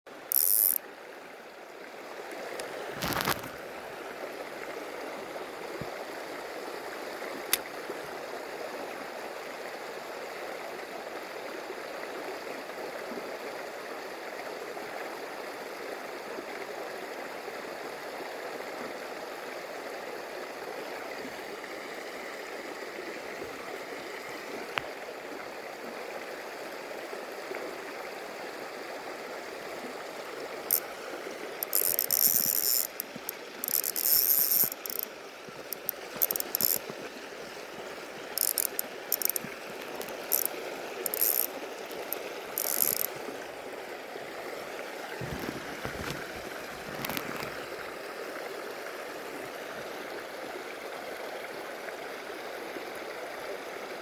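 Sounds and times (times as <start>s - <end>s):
stream running over rocks: 0.1s - 54.0s
sharp clicks: 0.3s - 0.8s, 31.6s - 35.1s, 35.7s - 36.8s, 38.4s - 40.5s, 41.1s - 43.1s.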